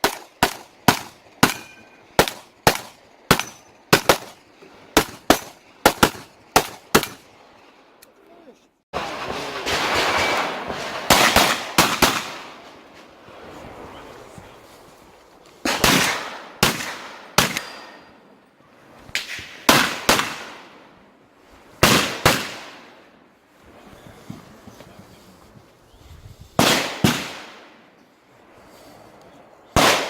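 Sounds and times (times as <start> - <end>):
pistol shots: 0.0 - 4.4, 5.0 - 7.2, 9.7 - 12.6, 15.7 - 18.1, 19.2 - 20.7, 21.8 - 22.9, 26.6 - 27.6, 29.8 - 30.0.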